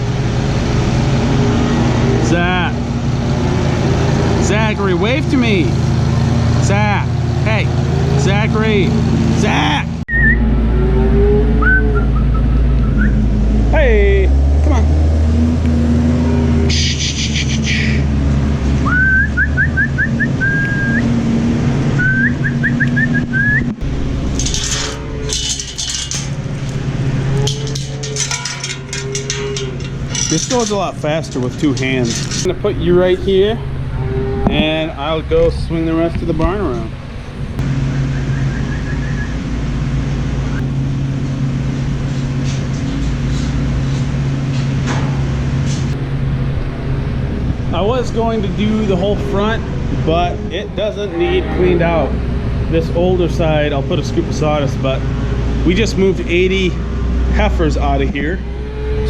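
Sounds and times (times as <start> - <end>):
low engine hum: 0.0 - 59.0
person whistling: 10.1 - 10.5, 11.6 - 13.2, 18.8 - 21.0, 22.0 - 23.8, 37.9 - 39.4
short falling squeal: 10.1 - 13.3.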